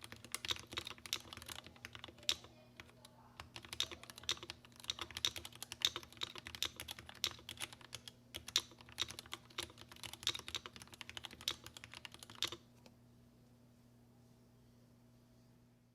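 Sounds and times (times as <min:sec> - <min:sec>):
mechanical keyboard typing: 0:00.0 - 0:12.6
faint steady hum: 0:00.0 - 0:15.9.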